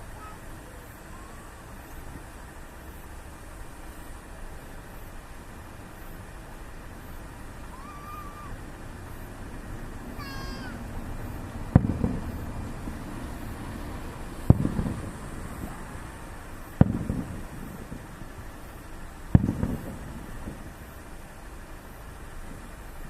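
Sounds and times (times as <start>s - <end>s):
firework shells bursting: 10.2s - 21.2s.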